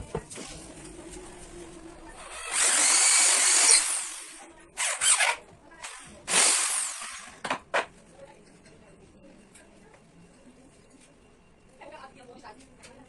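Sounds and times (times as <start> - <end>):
electric drill running: 2.2 - 7.4.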